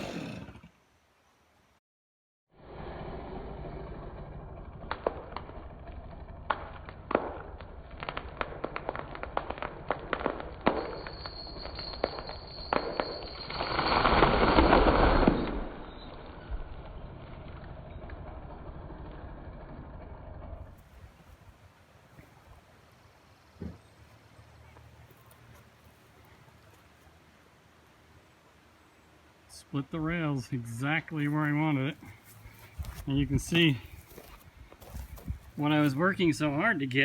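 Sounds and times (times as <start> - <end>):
low engine hum: 2.6 - 9.9, 15.8 - 27.4
tree wood cracking and snapping: 4.8 - 11.0, 33.8 - 35.6
tree crashing to ground: 4.8 - 18.8.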